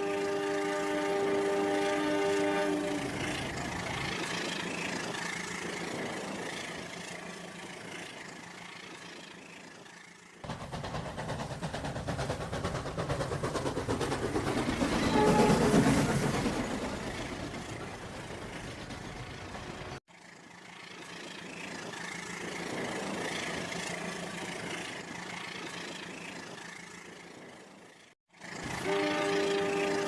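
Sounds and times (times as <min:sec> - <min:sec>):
train horn: 0:00.0 - 0:03.4, 0:15.0 - 0:15.8, 0:28.7 - 0:30.0
train rumble: 0:00.0 - 0:30.0
train wheel clatter: 0:02.7 - 0:20.0.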